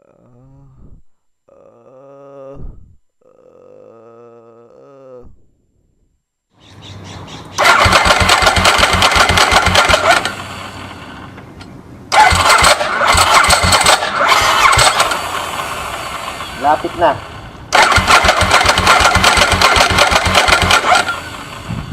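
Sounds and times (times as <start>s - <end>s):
motorcycle engine cranking: 7.6s - 11.3s, 12.1s - 21.7s.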